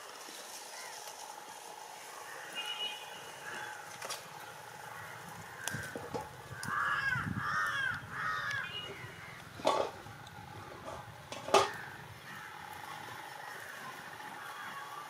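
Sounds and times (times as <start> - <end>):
bird calling: 2.2 - 9.7.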